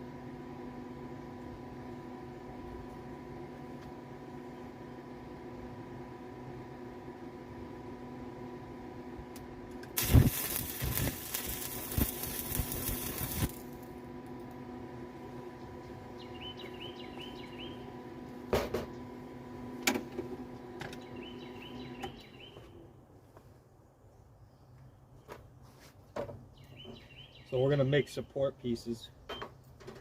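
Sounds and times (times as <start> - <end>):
steady hum: 0.0 - 23.1
welding arc crackling: 9.8 - 13.9
faint bird chirps: 16.2 - 17.9.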